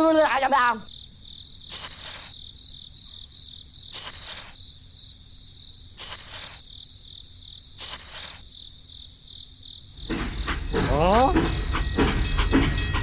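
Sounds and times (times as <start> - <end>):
insects trilling: 0.0 - 12.8
hissing insect buzz: 0.9 - 9.9.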